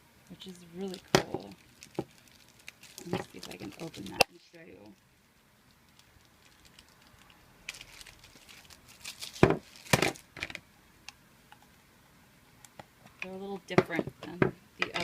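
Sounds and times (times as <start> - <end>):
sharp packaging cracks: 0.8 - 4.4, 5.9 - 10.4
packaging crinkling: 0.8 - 5.0, 5.8 - 10.4.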